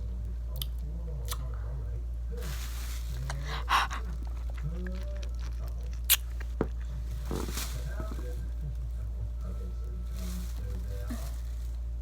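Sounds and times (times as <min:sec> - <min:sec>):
low electrical hum: 0:00.0 - 0:12.0
mouth noises eating candy: 0:02.4 - 0:11.9.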